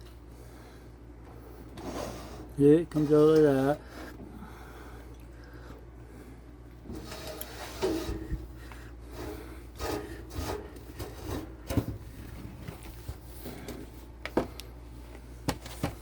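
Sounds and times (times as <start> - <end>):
filter frame rubbing and scraping: 6.8 - 13.3.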